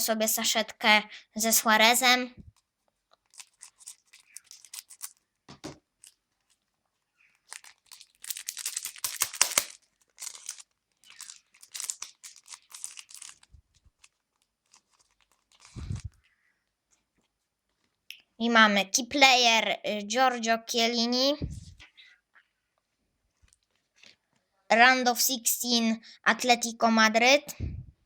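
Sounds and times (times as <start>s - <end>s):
wrapper tearing and crinkling: 2.6s - 16.2s.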